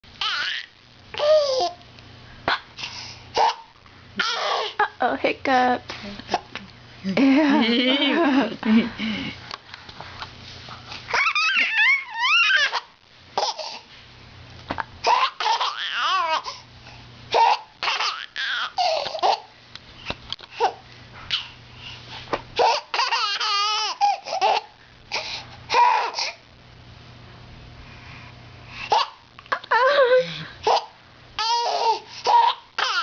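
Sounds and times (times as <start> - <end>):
baby laughing: 0.2 - 1.8, 3.4 - 4.8, 11.1 - 13.8, 15.0 - 16.5, 17.3 - 19.5, 22.6 - 24.7, 28.9 - 33.0.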